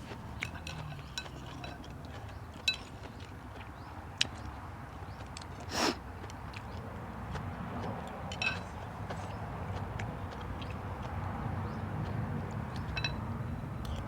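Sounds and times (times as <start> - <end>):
utensils clinking against a bowl: 0.0 - 3.3, 8.3 - 8.9, 12.9 - 13.2
eating noise: 0.0 - 13.0.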